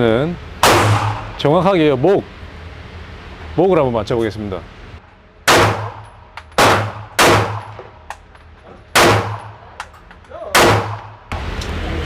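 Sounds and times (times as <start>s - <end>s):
pistol shots echoing indoors: 0.6s - 1.4s, 5.5s - 7.9s, 9.0s - 9.7s, 10.6s - 11.2s.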